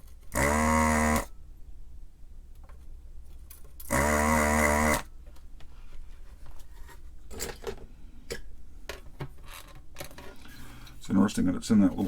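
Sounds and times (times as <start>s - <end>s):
desoldering pump motor whine: 0.3s - 1.3s, 3.9s - 5.1s.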